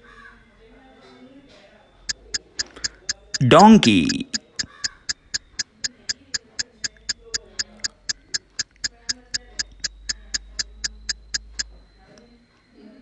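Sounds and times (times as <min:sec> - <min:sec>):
steady ticking: 0:02.1 - 0:11.8.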